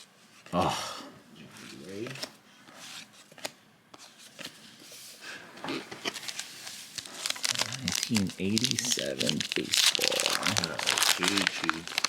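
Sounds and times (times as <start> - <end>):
cards being shuffled: 1.6 - 4.6, 5.6 - 12.0.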